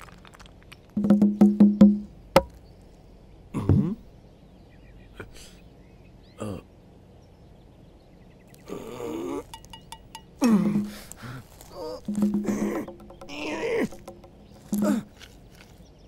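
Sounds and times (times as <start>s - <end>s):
sharp knock: 12.1s - 15.1s.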